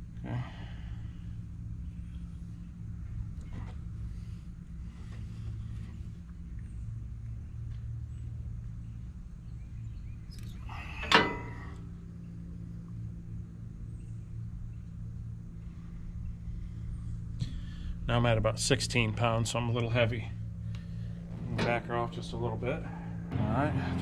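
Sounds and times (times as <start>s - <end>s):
steady low hum: 0.0s - 24.0s
sharp metallic clank: 10.8s - 11.8s.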